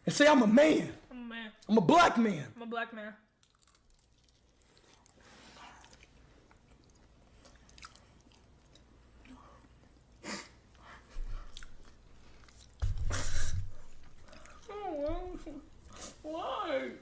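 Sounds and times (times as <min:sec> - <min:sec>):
person chewing fried chicken: 0:03.4 - 0:12.8, 0:13.7 - 0:15.0.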